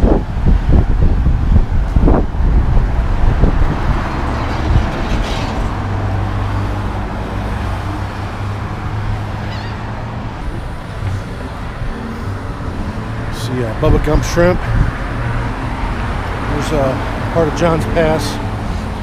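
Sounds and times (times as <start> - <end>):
low hum of traffic: 0.0 - 19.0
wind buffeting microphone: 0.0 - 19.0.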